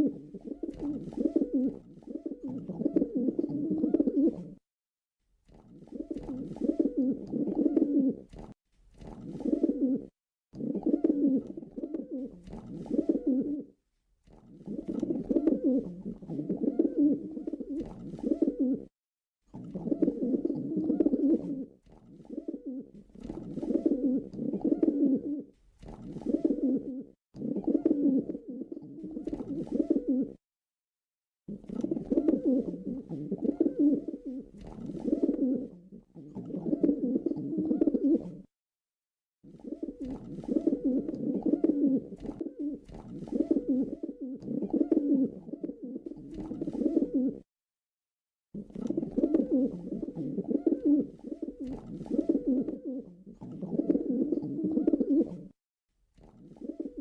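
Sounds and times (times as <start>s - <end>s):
pigeon cooing: 0.0s - 4.6s, 5.8s - 8.4s, 9.0s - 13.8s, 14.6s - 18.9s, 19.6s - 30.4s, 31.5s - 38.5s, 39.5s - 47.5s, 48.6s - 55.6s, 56.3s - 57.0s.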